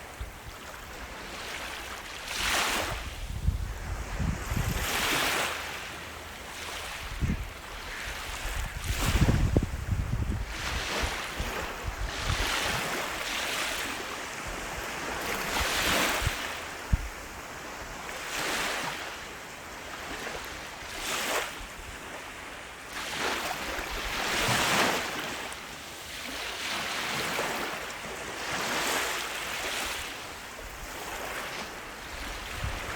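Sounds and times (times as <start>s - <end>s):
ocean waves breaking: 3.8s - 19.2s.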